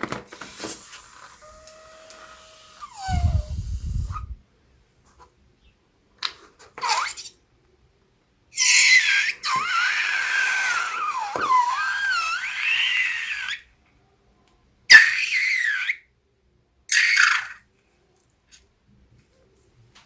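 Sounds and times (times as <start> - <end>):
air squealing out of balloon: 1.4 - 4.4, 8.6 - 13.6, 14.9 - 16.0.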